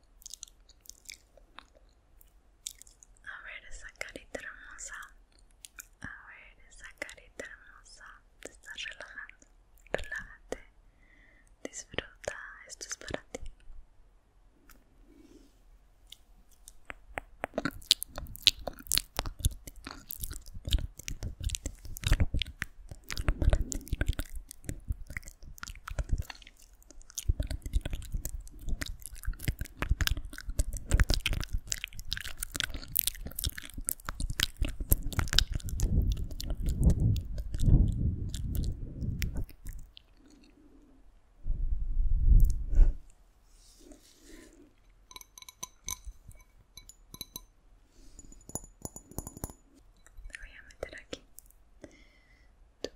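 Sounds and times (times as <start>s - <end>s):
wet mouth clicks and smacks: 0.0s - 3.2s, 4.0s - 6.2s, 16.1s - 40.6s, 42.4s - 42.6s, 45.1s - 47.5s, 48.2s - 52.0s.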